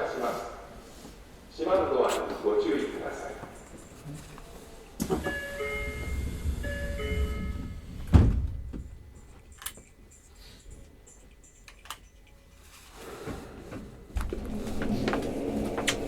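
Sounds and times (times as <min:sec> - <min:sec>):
sliding doors shutting thud: 0:05.0 - 0:09.0, 0:13.2 - 0:16.0
multi-note door chime: 0:05.2 - 0:08.0.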